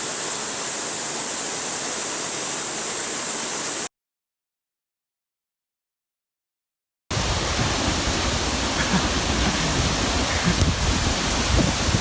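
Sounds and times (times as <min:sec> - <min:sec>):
waterfall roaring: 0:07.1 - 0:12.0.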